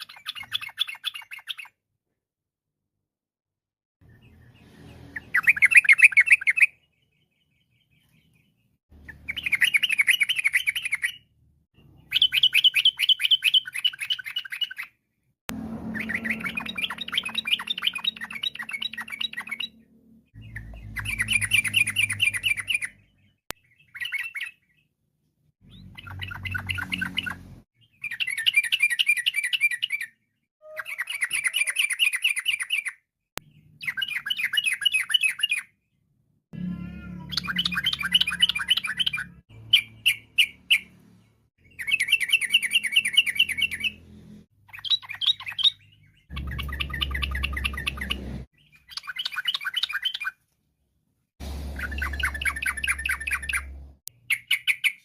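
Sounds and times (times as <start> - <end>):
bird singing chattering notes: 12.0 - 14.9, 15.9 - 24.6, 25.6 - 30.1, 37.3 - 40.9, 44.7 - 50.3, 51.8 - 55.0.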